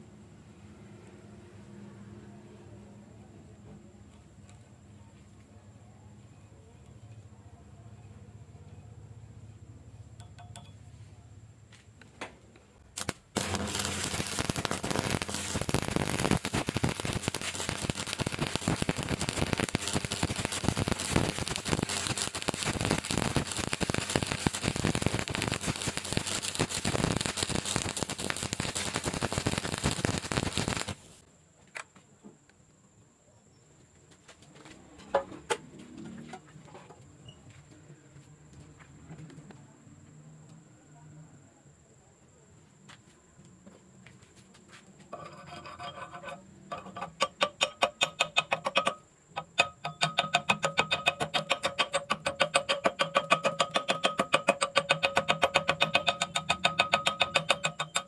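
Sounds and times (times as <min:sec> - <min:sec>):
welding arc crackling: 0:12.9 - 0:31.2, 0:46.7 - 0:58.0
welding electrode strikes: 0:13.0 - 0:31.2, 0:46.3 - 0:58.0.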